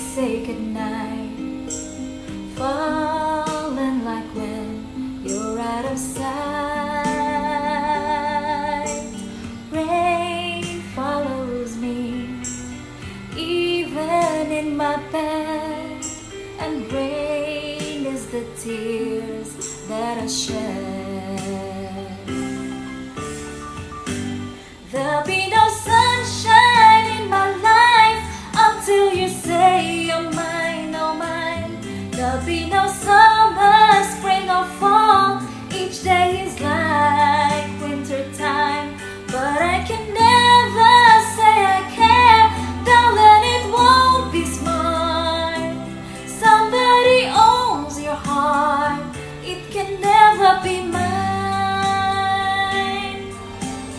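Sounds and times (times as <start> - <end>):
woman singing a slow ballad: 0.0 - 53.9
backing track with bass and beat: 21.4 - 53.9.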